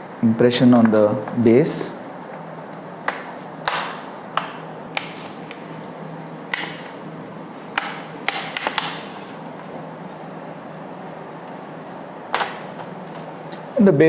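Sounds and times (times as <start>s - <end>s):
plastic clips popping free: 3.0s - 5.6s, 6.5s - 7.1s, 7.7s - 9.1s.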